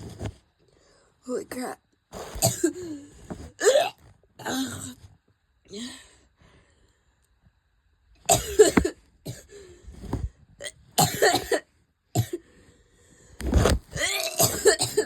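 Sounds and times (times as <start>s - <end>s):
person coughing harshly: 2.3s - 2.9s, 8.3s - 9.5s, 11.0s - 12.4s, 14.0s - 15.0s.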